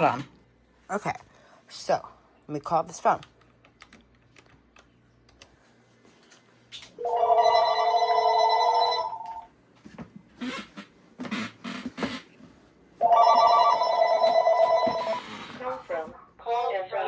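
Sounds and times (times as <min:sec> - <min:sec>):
electronic telephone ringtone: 0:07.0 - 0:09.5, 0:13.0 - 0:15.4.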